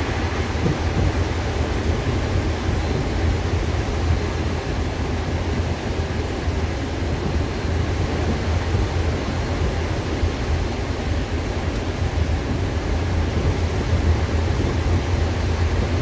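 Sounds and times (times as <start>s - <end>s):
train hiss: 0.0s - 6.9s
train running low rumble: 0.0s - 16.0s.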